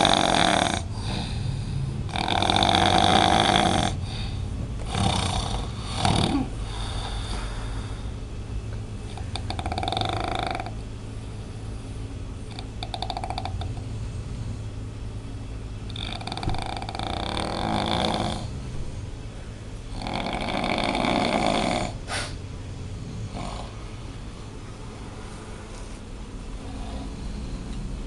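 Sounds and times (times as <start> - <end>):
person snoring heavily: 0.0 - 8.1, 9.1 - 10.8, 12.5 - 13.8, 15.9 - 18.7, 19.9 - 22.4, 23.0 - 23.9, 26.6 - 28.0
steady low hum: 0.0 - 28.0.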